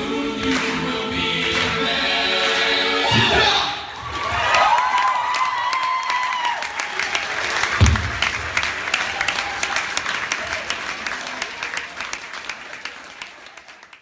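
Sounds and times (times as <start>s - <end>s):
cheers: 3.1s - 14.0s
audience applause: 4.0s - 14.0s.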